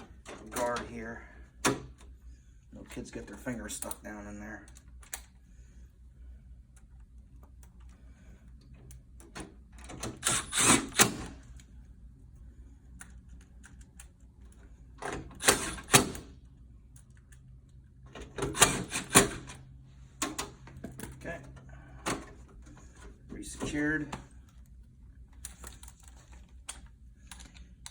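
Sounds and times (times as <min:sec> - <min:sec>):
low steady hum: 0:00.0 - 0:27.9.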